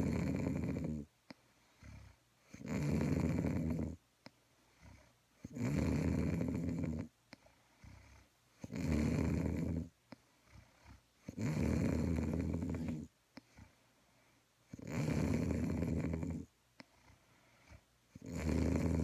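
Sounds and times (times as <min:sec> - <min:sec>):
rough snoring: 0:00.0 - 0:01.1, 0:01.8 - 0:04.0, 0:04.8 - 0:07.1, 0:07.8 - 0:13.1, 0:14.7 - 0:16.5, 0:18.2 - 0:19.0.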